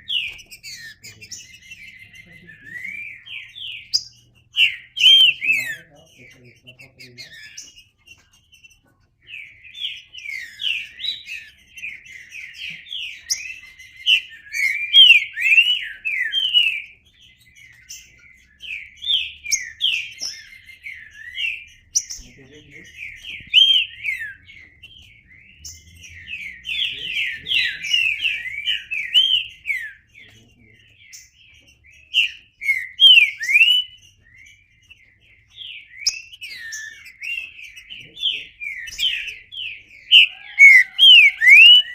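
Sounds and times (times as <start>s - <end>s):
bird singing whistled phrases: 0.0s - 6.3s, 10.2s - 17.0s, 23.0s - 30.0s, 32.0s - 34.6s, 35.7s - 41.9s.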